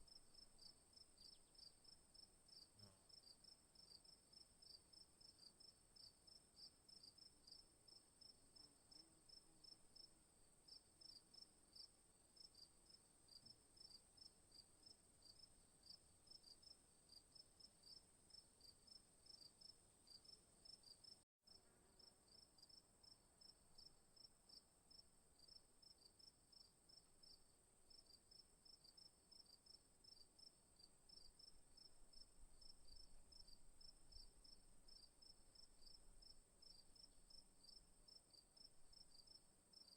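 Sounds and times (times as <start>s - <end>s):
crickets chirping: 22.0s - 39.9s.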